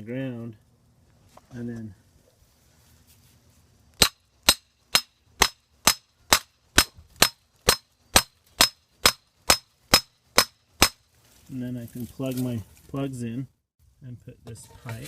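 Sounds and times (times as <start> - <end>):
hammer striking metal stake: 4.0 - 11.1.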